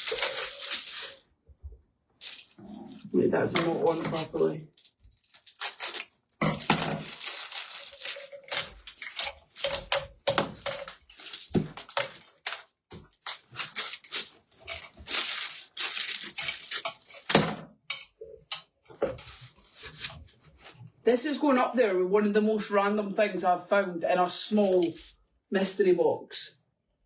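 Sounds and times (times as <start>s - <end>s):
parts knocking and clicking: 6.4s - 15.2s.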